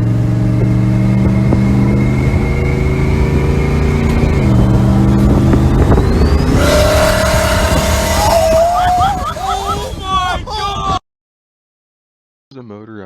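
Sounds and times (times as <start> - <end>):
car engine running: 0.0 - 9.9
thin high turbo whine: 0.5 - 10.0
faint rising whistle: 1.8 - 9.4.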